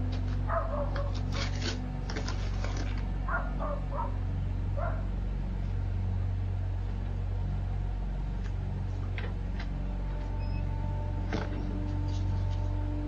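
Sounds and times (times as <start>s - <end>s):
steady low hum: 0.0s - 13.0s
dog barking: 0.5s - 1.2s, 3.3s - 4.2s, 4.8s - 5.0s.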